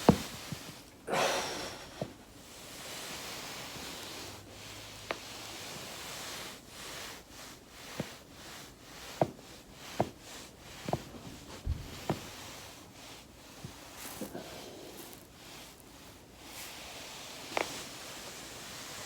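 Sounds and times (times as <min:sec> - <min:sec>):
dull thump: 0:00.0 - 0:00.7, 0:10.8 - 0:12.7
clothing rustling on foam roller: 0:00.0 - 0:19.0.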